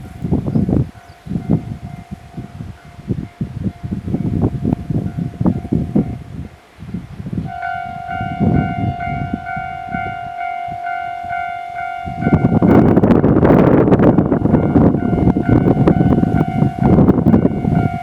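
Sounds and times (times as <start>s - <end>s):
train rushing: 0.0s - 18.0s
wind on microphone: 0.0s - 18.0s
level crossing alarm clanging: 7.5s - 18.0s.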